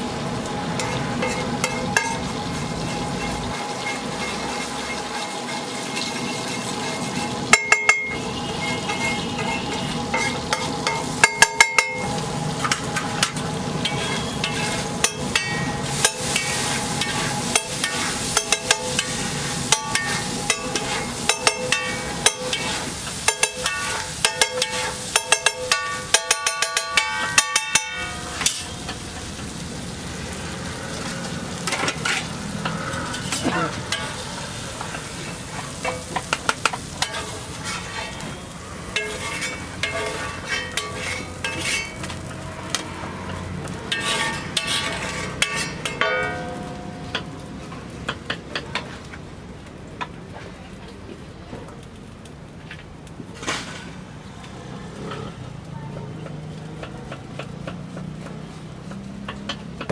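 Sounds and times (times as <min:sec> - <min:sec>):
food sizzling in a pan: 0:00.0 - 0:50.2, 0:53.3 - 0:59.9
metal spatula clinking on pan: 0:07.5 - 0:08.2, 0:12.7 - 0:29.0, 0:38.9 - 0:42.9, 0:43.9 - 0:47.3.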